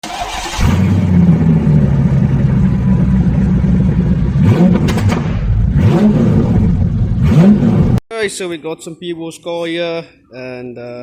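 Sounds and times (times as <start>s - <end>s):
car engine running: 0.5s - 8.0s.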